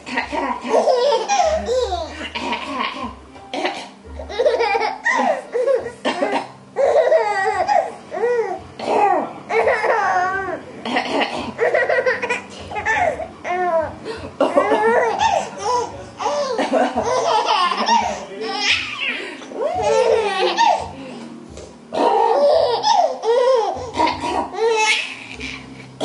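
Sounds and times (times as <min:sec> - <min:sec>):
baby laughing: 0:00.6 - 0:13.8, 0:14.4 - 0:21.0, 0:21.9 - 0:26.0
woman coughing: 0:02.2 - 0:04.0, 0:06.0 - 0:06.6, 0:08.8 - 0:09.2.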